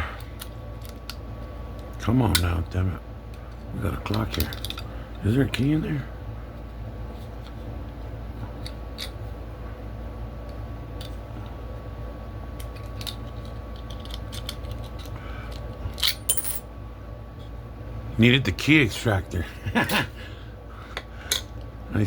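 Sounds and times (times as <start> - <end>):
low steady hum: 0.0 - 22.0
louder metal clinks: 16.0 - 16.6.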